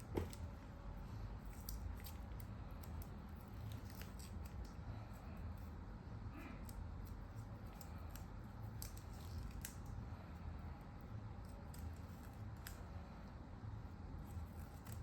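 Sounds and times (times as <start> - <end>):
low steady hum: 0.0 - 15.0
tape peeling crackles: 1.4 - 4.8, 6.4 - 9.9, 14.2 - 15.0.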